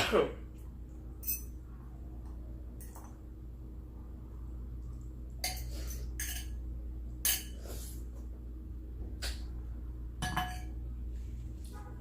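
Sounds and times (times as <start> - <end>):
low hum: 0.0 - 12.0
cutlery clinking on a plate: 5.4 - 6.6.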